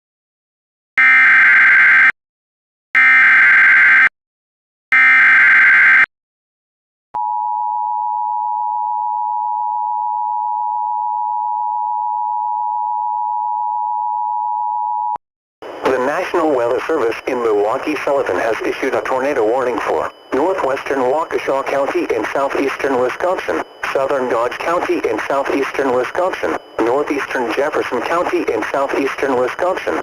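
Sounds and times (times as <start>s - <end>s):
digital data screech bursts: 15.9s - 30.0s.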